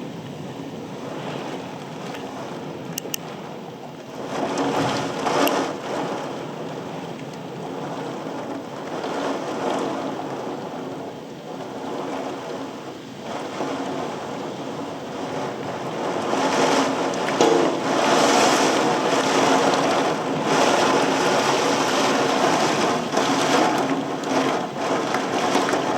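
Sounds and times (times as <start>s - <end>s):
gusty wind rushing: 15.9s - 23.5s.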